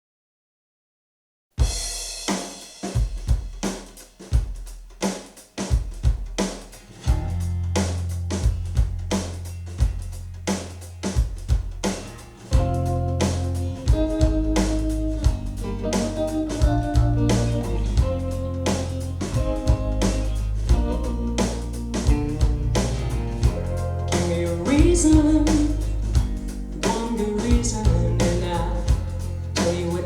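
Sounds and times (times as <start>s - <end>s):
kick and snare drum hits: 1.6s - 7.4s
bass line: 7.1s - 10.6s, 11.5s - 30.0s
guitar chords: 12.0s - 30.0s.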